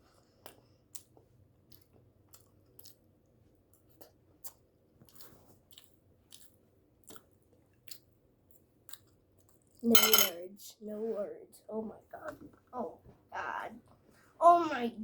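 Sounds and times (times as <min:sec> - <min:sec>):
close-up chewing: 0:00.2 - 0:09.8.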